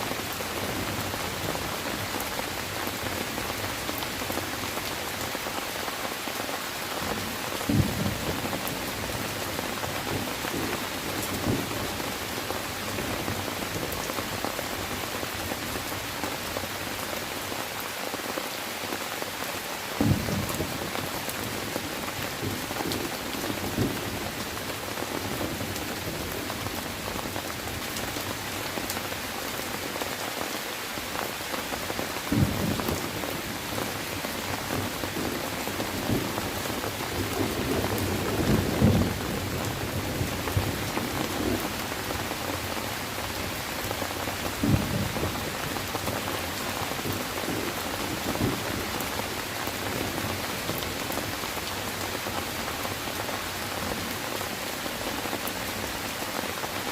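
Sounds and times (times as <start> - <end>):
rain hissing and pattering: 0.0 - 56.9.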